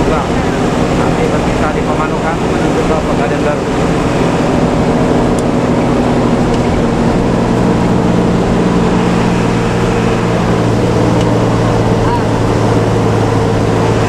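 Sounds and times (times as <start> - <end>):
bus diesel engine running: 0.0 - 14.0.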